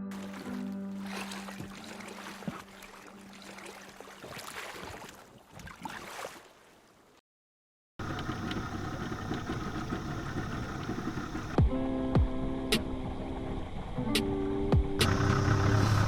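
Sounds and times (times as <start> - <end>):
boat motor humming: 0.1 - 3.5, 8.0 - 11.6, 12.5 - 16.0.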